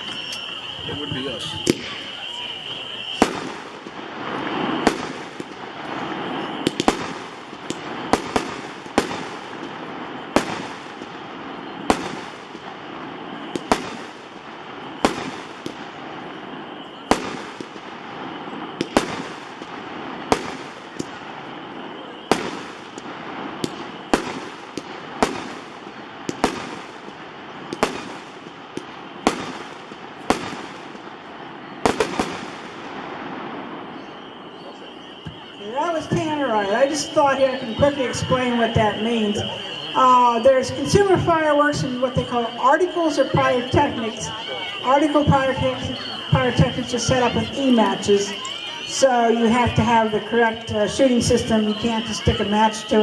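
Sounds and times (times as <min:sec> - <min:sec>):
firework repeater bangs: 0:00.0 - 0:53.0.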